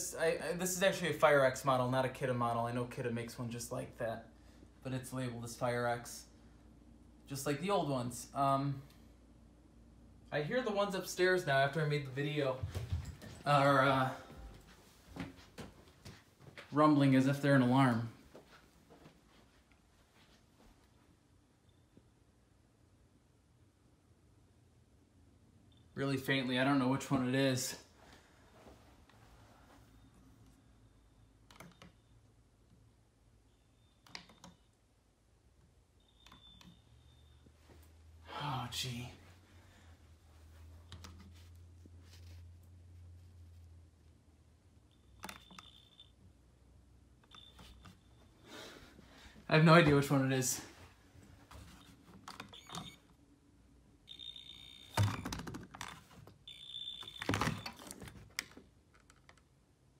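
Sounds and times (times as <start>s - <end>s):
quiet room hum: 0.0s - 59.9s
faint smoke alarm beeps: 21.6s - 22.2s, 25.6s - 26.0s, 30.0s - 32.3s, 33.4s - 34.8s, 36.0s - 37.7s, 44.8s - 46.3s, 47.2s - 48.8s, 51.7s - 53.2s, 54.0s - 55.4s, 56.4s - 57.9s.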